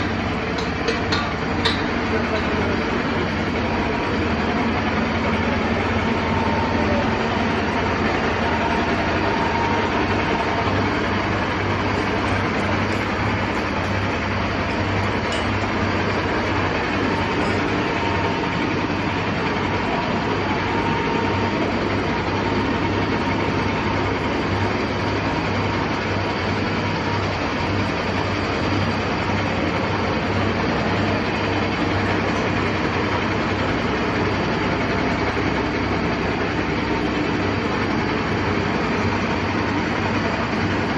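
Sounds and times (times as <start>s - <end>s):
heavy engine running: 0.0s - 40.9s.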